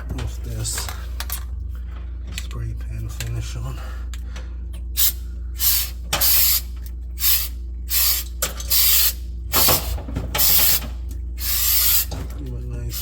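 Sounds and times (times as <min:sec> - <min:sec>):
aerosol spray can hissing: 0:11.4 - 0:12.1.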